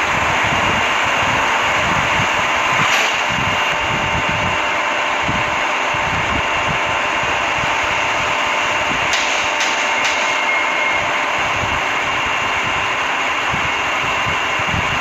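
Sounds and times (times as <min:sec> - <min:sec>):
train wheels and motors rumbling: 0:00.0 - 0:15.0.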